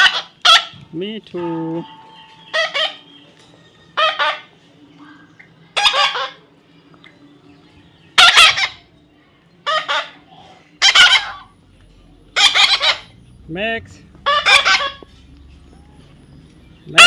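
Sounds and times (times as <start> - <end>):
parrot calling: 0.0 - 0.8, 1.9 - 3.2, 4.0 - 4.5, 5.7 - 6.5, 8.2 - 8.9, 9.6 - 11.6, 12.2 - 16.2.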